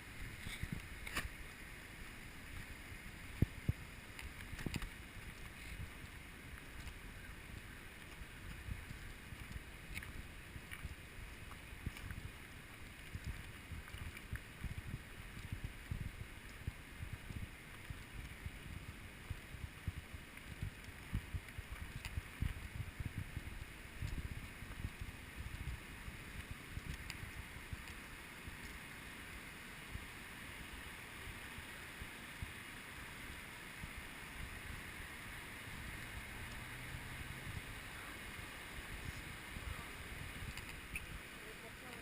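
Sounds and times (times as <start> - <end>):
steady rushing hiss: 0.0 - 42.0
faint clicks: 3.4 - 28.8, 39.1 - 42.0
wind buffeting microphone: 13.1 - 27.8.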